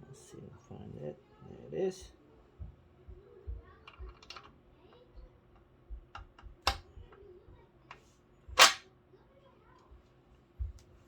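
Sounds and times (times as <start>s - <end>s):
metal parts clicking and tapping: 3.9s - 4.5s.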